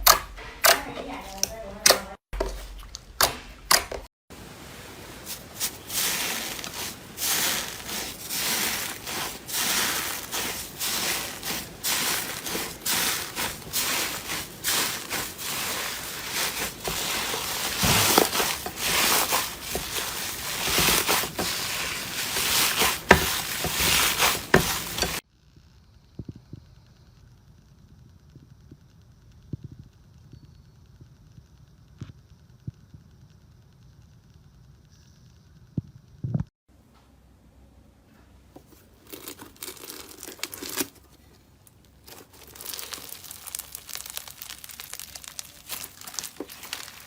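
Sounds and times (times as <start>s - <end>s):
slime squeezed by hand crackling: 42.0s - 47.0s.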